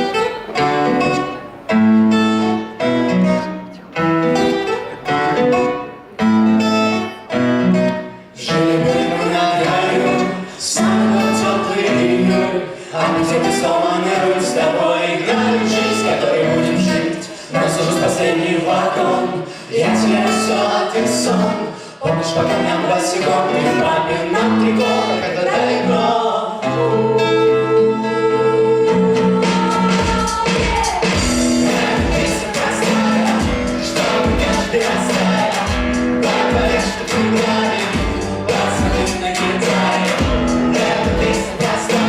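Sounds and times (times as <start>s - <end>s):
wordless voices: 8.4s - 42.0s
plucked string chords: 31.1s - 42.0s.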